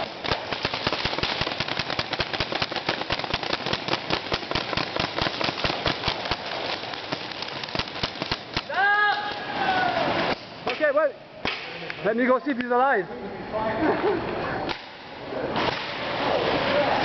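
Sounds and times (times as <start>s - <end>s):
paintball markers firing: 0.0s - 8.7s.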